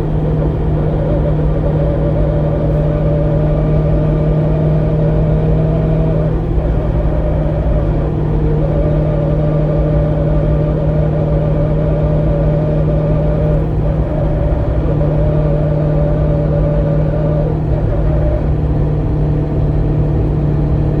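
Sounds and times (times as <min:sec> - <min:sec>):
high whine: 0:00.0 - 0:21.0
steady low drone: 0:00.0 - 0:21.0.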